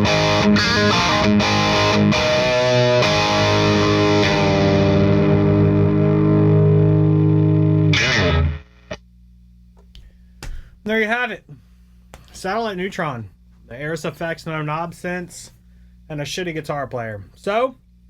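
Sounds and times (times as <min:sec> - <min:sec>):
overdriven electric guitar: 0:00.0 - 0:09.0.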